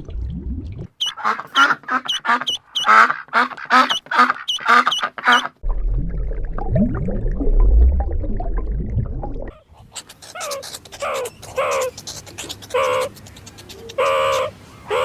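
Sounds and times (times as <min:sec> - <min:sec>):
duck quacking: 0:01.0 - 0:05.6
low rumble: 0:05.6 - 0:09.6.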